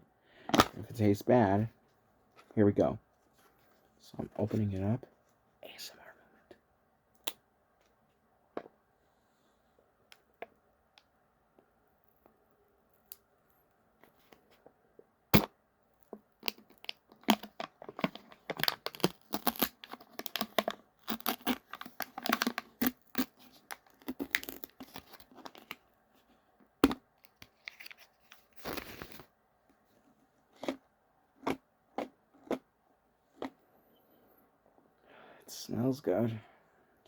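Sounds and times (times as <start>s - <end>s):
foil seal tearing and crinkling: 16.4s - 25.8s.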